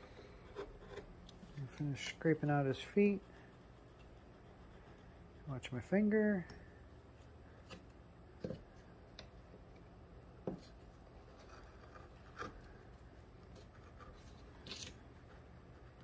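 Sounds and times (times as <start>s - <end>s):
carving tool scraping bark: 0.0s - 5.5s, 11.2s - 12.9s.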